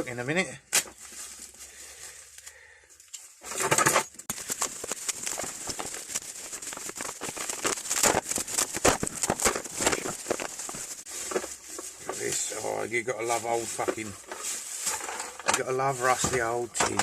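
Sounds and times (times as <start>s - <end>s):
packaging rustling: 0.9s - 2.5s, 3.2s - 17.0s
tools clattering: 3.0s - 6.0s, 13.3s - 17.0s.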